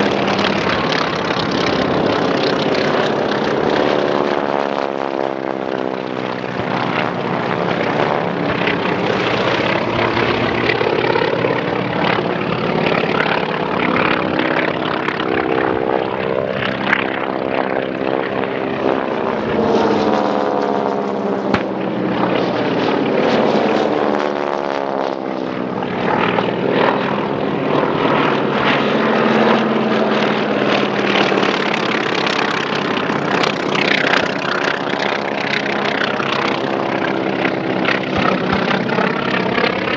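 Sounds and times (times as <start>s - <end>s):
propeller planes flying low passes: 0.0s - 39.9s.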